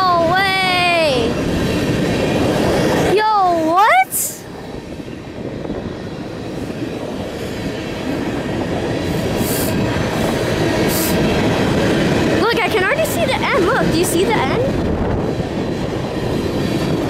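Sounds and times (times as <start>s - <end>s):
freight train wheels rumbling: 0.0s - 17.0s.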